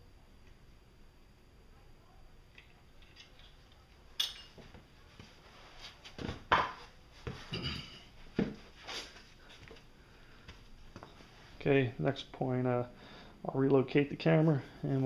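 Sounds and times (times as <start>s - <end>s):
metal tools clinking and knocking: 2.6s - 3.6s, 4.2s - 4.7s, 7.5s - 8.1s.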